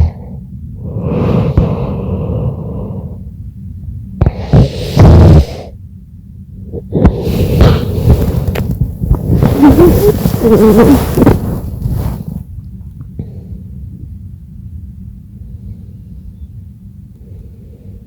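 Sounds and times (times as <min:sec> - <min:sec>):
long wheezing breath with whistle: 0:00.0 - 0:03.3.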